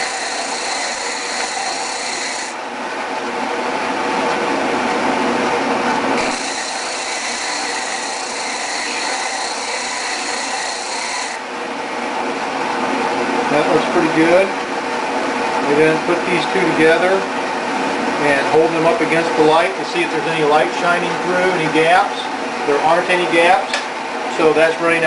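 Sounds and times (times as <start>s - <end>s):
disc sander grinding wood: 0.0s - 2.6s, 6.2s - 11.5s.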